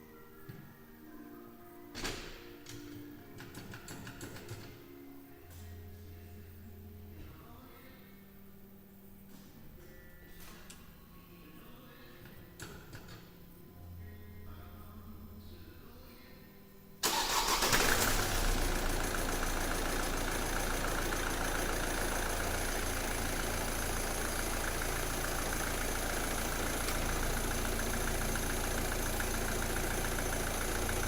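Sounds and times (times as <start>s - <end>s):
diesel engine starting and idling: 17.0s - 31.0s.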